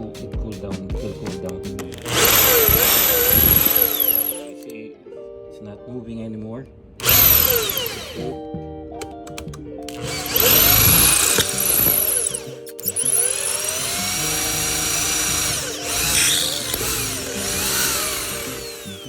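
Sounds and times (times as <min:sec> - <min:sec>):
background music: 0:00.0 - 0:19.0
electric drill boring steel: 0:01.9 - 0:04.7, 0:07.0 - 0:08.4, 0:09.9 - 0:19.0.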